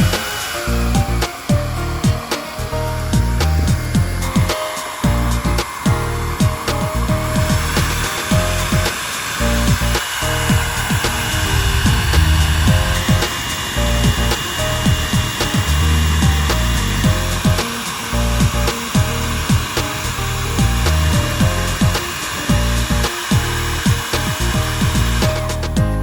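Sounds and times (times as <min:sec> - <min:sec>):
hair dryer blowing: 0:00.0 - 0:25.8
background music with drums: 0:00.0 - 0:26.0.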